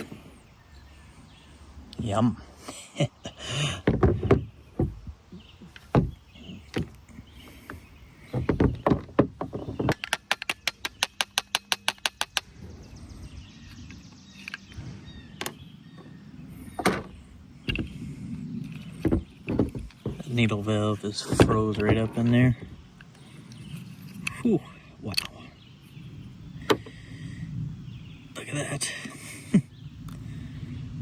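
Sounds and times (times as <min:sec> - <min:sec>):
hand tools and metal parts knocking: 0:03.6 - 0:12.5, 0:16.7 - 0:24.5.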